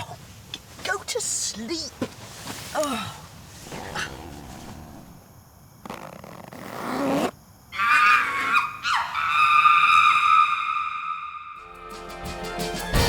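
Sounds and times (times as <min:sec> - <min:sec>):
monkeys screeching and hooting: 0:07.8 - 0:11.4.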